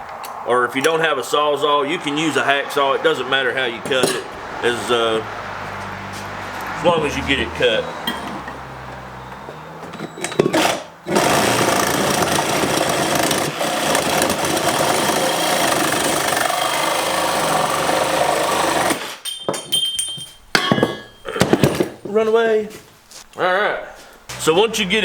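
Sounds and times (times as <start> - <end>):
reciprocating saw cutting copper tubing: 10.2 - 19.4
light metal clinks: 19.2 - 21.4.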